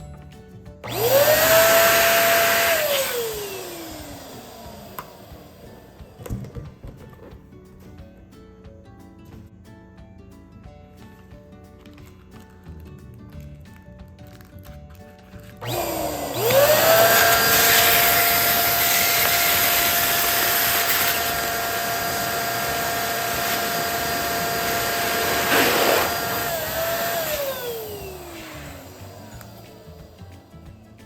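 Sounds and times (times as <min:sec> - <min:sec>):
electric pump motor whining: 0:00.8 - 0:06.5, 0:15.6 - 0:30.8.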